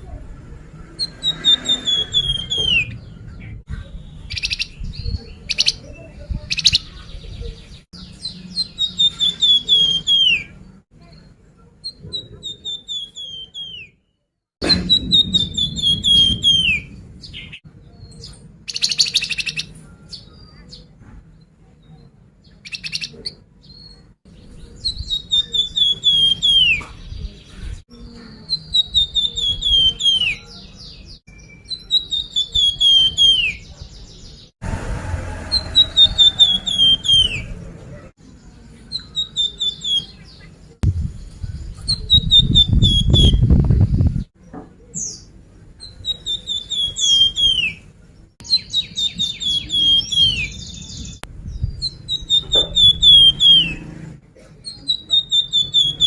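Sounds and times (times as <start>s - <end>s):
bird whistling falling phrase: 1.2s - 3.0s, 14.6s - 17.6s.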